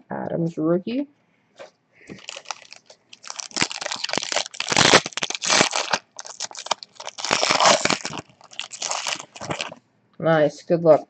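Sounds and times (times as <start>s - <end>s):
plastic wrapper crinkling and tearing: 2.1s - 9.8s.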